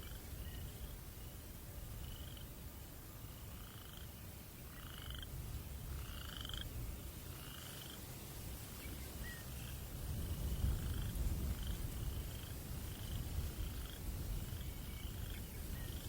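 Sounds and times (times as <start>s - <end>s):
frog croaking: 0.0s - 1.0s, 2.0s - 2.5s, 3.3s - 8.1s, 10.6s - 16.0s.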